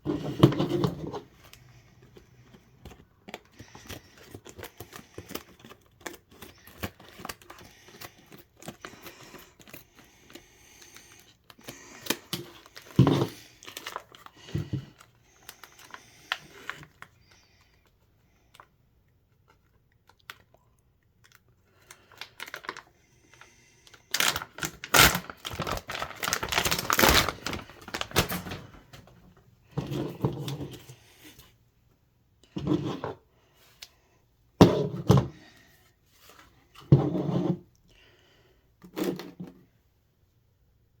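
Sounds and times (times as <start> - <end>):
packaging crinkling and rustling: 0.1 - 18.7, 19.3 - 30.7.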